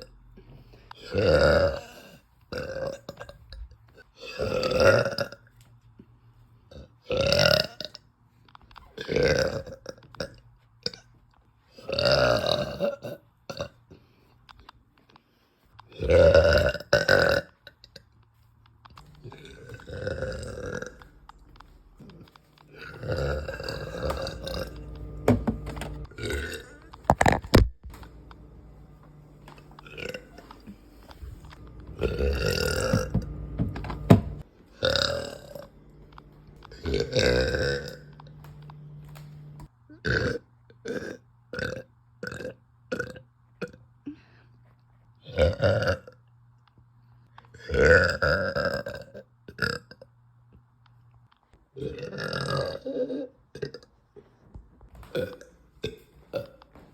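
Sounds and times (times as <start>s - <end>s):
woman burping: 1.0s - 3.5s, 4.2s - 5.5s, 11.8s - 13.8s, 15.9s - 18.1s, 19.2s - 21.1s, 22.0s - 25.0s, 26.0s - 27.4s, 31.6s - 33.6s, 34.8s - 35.7s, 36.7s - 38.6s, 39.9s - 43.8s, 51.8s - 53.9s.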